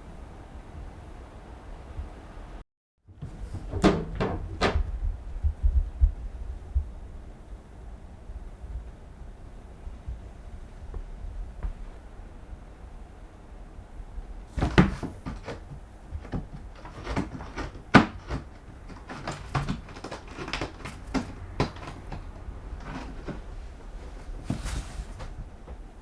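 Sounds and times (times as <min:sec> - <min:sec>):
cat knocking and thumping on lodge: 0:03.2 - 0:05.0, 0:14.5 - 0:25.9.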